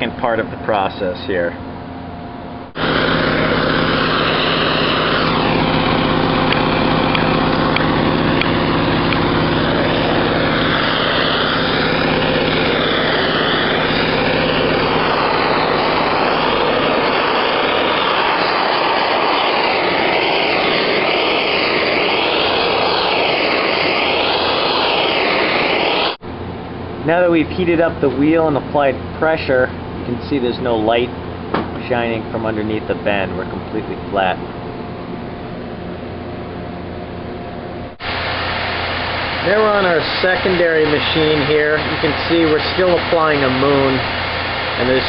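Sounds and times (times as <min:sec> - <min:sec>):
machine hum: 0:00.0 - 0:45.0
machine rushing noise: 0:02.6 - 0:26.2, 0:35.8 - 0:45.0.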